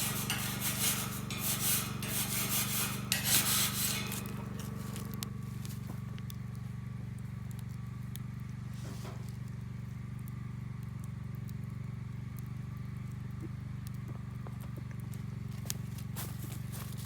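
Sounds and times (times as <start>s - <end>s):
steady low hum: 0.0s - 17.0s
campfire crackling and popping: 4.2s - 17.0s.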